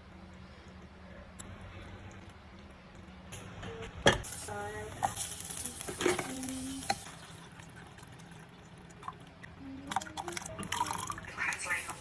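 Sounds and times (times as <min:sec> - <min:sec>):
food sizzling in pan: 0:04.2 - 0:07.8.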